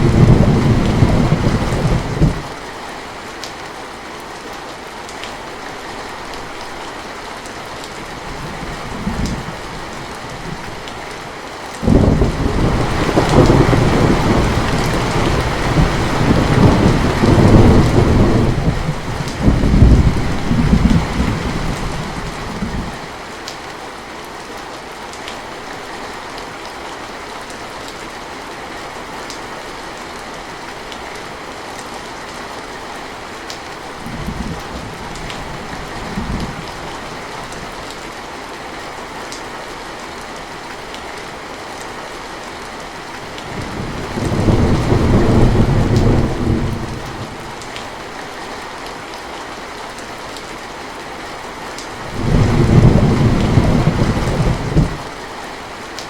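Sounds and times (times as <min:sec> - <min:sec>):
thunder rumbling: 0:00.0 - 0:02.6, 0:11.8 - 0:23.0, 0:43.5 - 0:47.6, 0:52.1 - 0:55.2
steady rain: 0:00.0 - 0:56.0.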